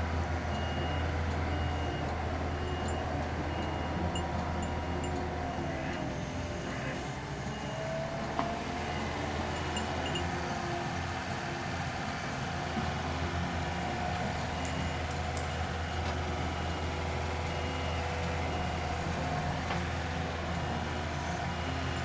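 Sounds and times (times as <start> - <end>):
skid steer engine running: 0.0 - 22.0.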